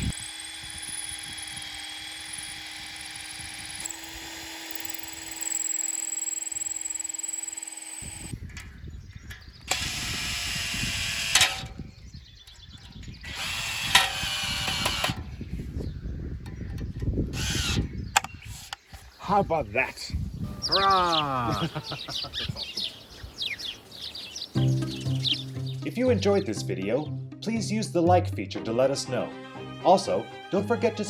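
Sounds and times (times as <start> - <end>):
power drill running: 0.0 - 8.8, 9.6 - 11.8, 13.0 - 15.4, 17.3 - 18.0.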